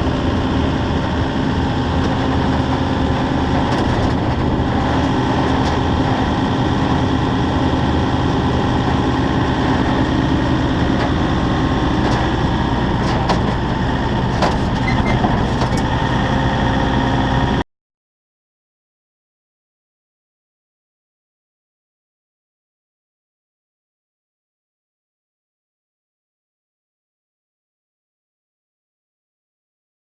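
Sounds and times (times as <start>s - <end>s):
heavy diesel engine running: 0.0s - 17.6s.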